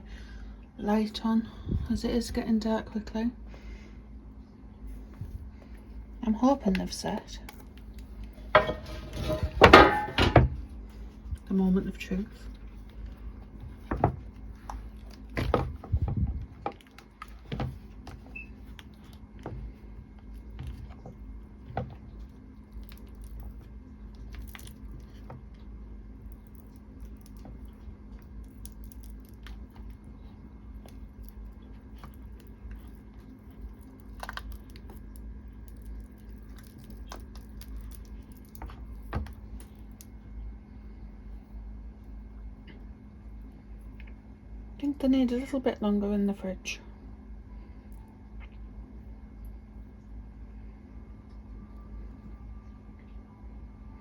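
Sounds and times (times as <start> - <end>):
steady low hum: 0.0 - 54.0
knocks and clunks: 8.5 - 10.6
small clicks and crackles: 16.6 - 40.2.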